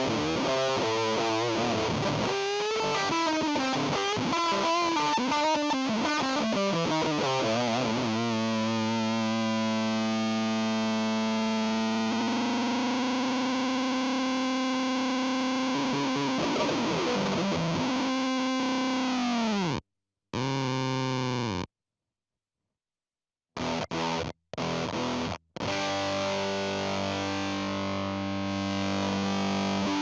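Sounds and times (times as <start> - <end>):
fuzzed electric guitar note: 11.7 - 19.8.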